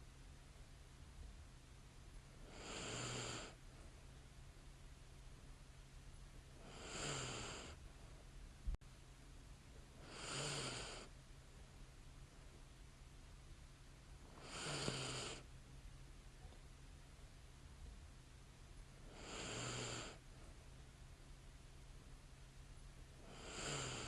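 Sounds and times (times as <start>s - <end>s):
woman snoring lightly: 2.4s - 3.6s, 6.6s - 7.8s, 10.0s - 11.1s, 14.4s - 15.5s, 19.1s - 20.2s, 23.2s - 24.0s.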